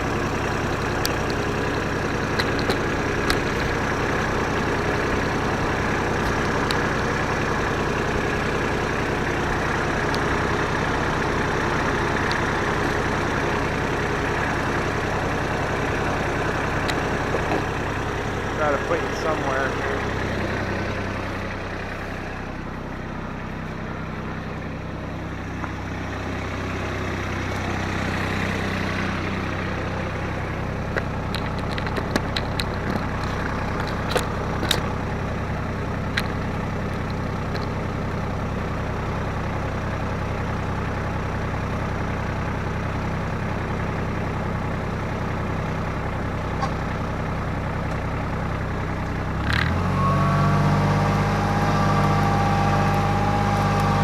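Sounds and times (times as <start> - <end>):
diesel tractor engine idling: 0.0 - 54.0.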